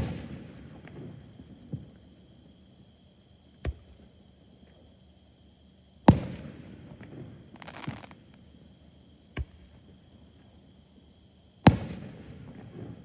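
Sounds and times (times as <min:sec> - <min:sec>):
fireworks crackling shower: 0:07.6 - 0:08.2.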